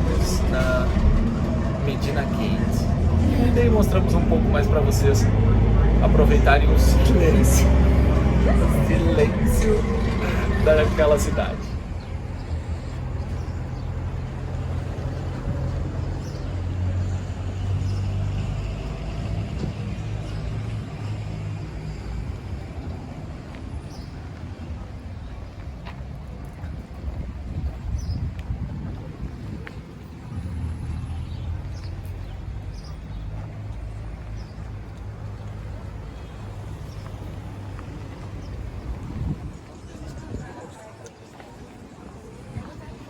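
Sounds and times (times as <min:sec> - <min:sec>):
steady low rumble: 0:00.0 - 0:17.6, 0:34.2 - 0:40.4
bus engine droning: 0:00.0 - 0:43.0
road noise: 0:00.0 - 0:43.0.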